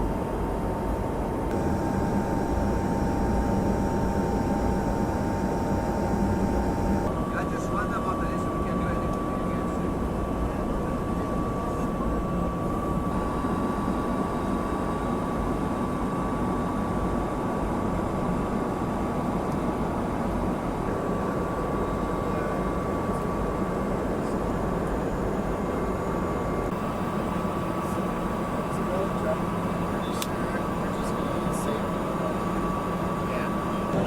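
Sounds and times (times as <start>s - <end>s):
high-pitched whine: 0.0s - 15.4s
jet engines and airflow: 0.0s - 34.0s.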